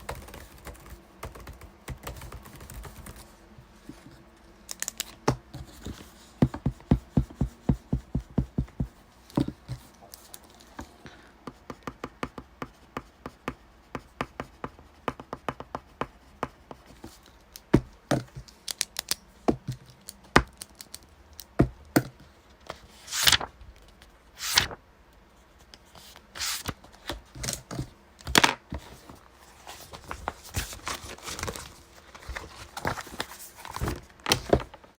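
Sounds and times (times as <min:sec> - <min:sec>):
keyboard typing: 0:00.0 - 0:03.2
paper swishing: 0:22.8 - 0:23.5, 0:24.4 - 0:24.8, 0:26.1 - 0:26.8.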